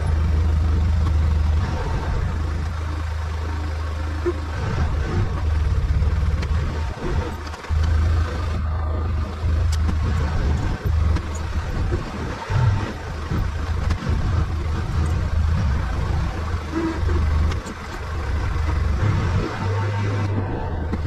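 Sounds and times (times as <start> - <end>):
vehicle engine rumbling: 0.0 - 21.0.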